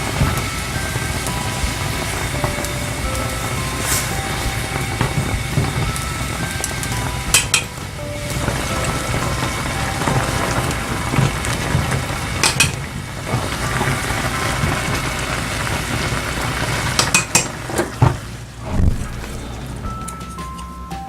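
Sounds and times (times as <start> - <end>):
noodles and broth hissing: 0.0 - 18.7
metal utensils clinking on pot: 6.8 - 7.8, 10.1 - 12.8, 17.0 - 17.6.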